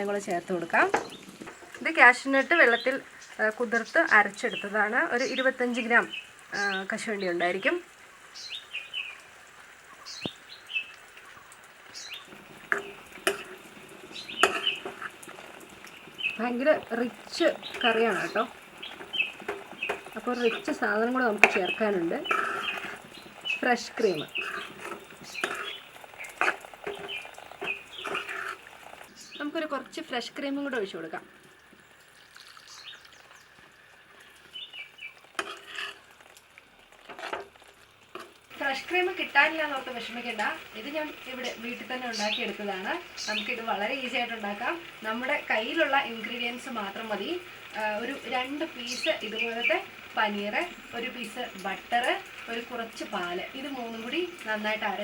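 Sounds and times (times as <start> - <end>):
faint sizzle: 0.0 - 55.0
spoon scraping and knocking pan: 0.6 - 1.9, 12.2 - 29.0, 35.3 - 36.1, 37.0 - 40.6
small bird chirping: 2.4 - 29.6, 31.9 - 35.2, 41.5 - 43.6
spoon stirring thick curry: 12.2 - 31.8, 33.5 - 36.4, 37.0 - 41.6
utensil clinking on pan: 14.2 - 15.1.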